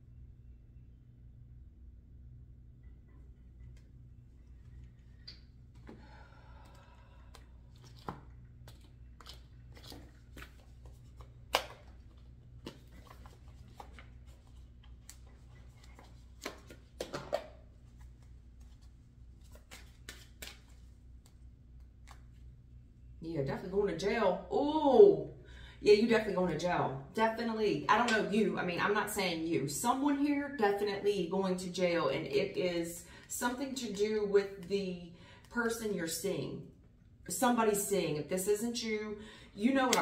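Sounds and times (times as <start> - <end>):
low steady hum: 0.0 - 40.0
cards clicking and tapping: 7.3 - 14.1, 14.8 - 22.4.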